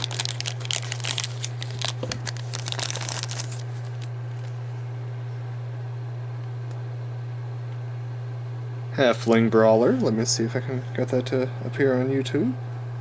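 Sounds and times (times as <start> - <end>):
plastic packaging crinkling: 0.0 - 4.6
steady low hum: 0.0 - 13.0.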